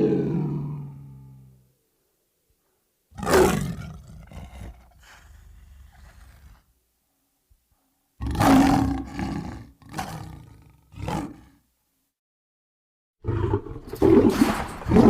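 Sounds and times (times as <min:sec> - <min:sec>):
lion roaring: 0:00.0 - 0:01.6, 0:03.1 - 0:06.7, 0:08.2 - 0:11.6, 0:13.2 - 0:15.0.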